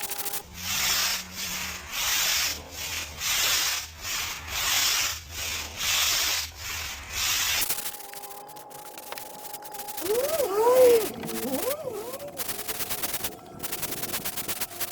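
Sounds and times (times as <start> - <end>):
paving strokes hissing: 0.5 - 14.9
low hum: 7.7 - 14.9.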